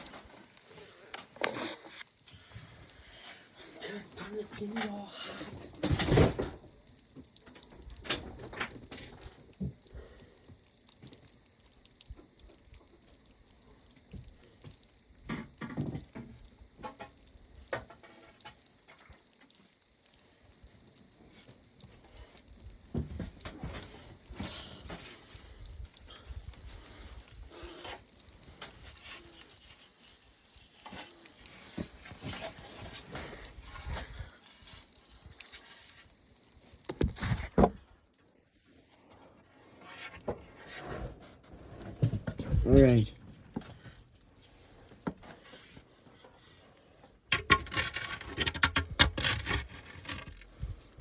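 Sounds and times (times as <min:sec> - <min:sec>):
paddle striking and breaking ice: 0:47.3 - 0:50.4.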